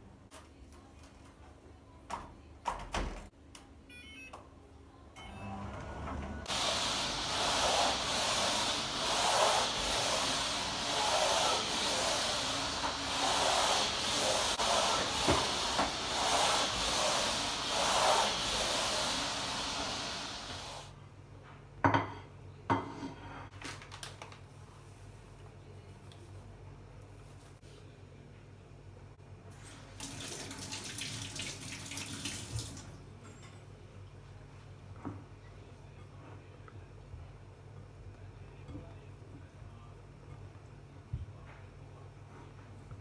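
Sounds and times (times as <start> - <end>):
steady hiss: 6.5 - 20.9.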